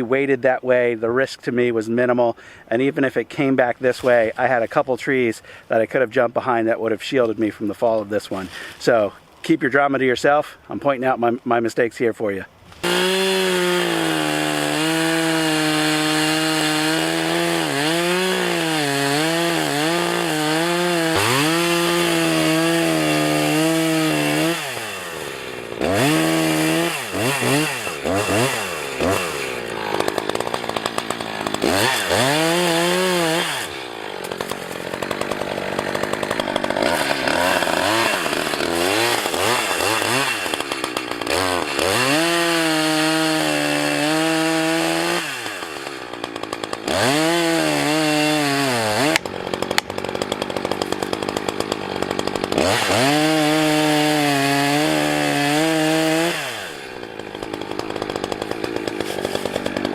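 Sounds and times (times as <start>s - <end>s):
chainsaw revving and cutting: 12.8s - 59.9s.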